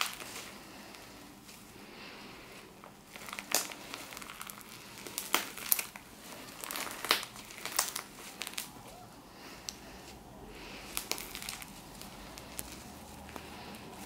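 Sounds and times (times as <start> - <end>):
slime crackling and popping: 0.0 - 1.0, 2.8 - 9.0, 10.6 - 14.0.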